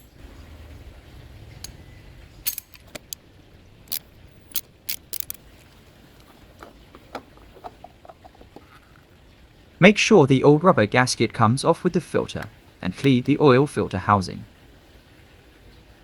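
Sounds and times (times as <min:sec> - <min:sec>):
oil filter wrench clinking: 0:00.0 - 0:00.2, 0:02.4 - 0:03.2, 0:03.8 - 0:05.6.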